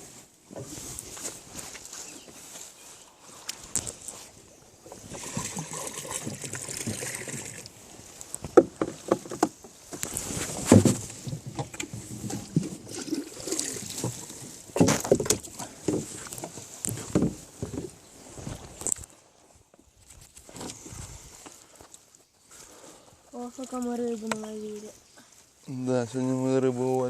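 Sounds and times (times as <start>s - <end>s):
water sloshing and splashing: 4.9s - 7.9s, 10.2s - 17.9s.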